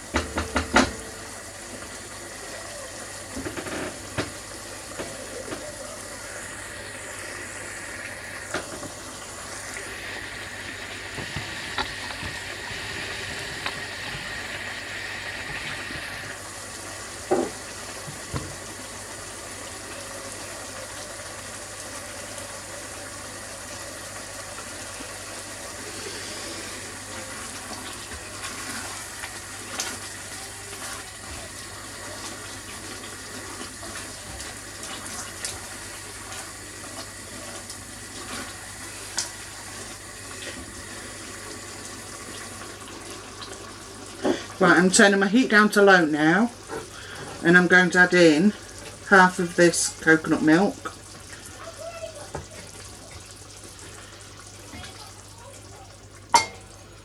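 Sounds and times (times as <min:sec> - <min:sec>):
curry hissing in a pan: 0:00.0 - 0:57.0.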